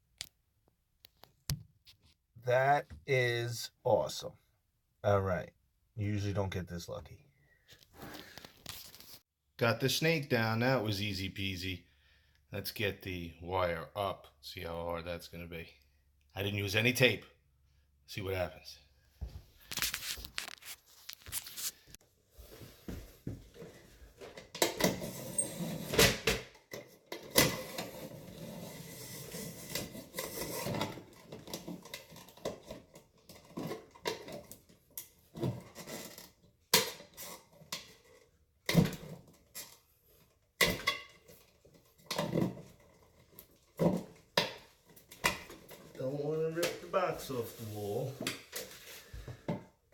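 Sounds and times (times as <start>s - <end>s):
cable scraping and rustling in wall: 7.7s - 9.2s, 19.5s - 26.0s, 26.7s - 38.4s, 41.1s - 49.6s.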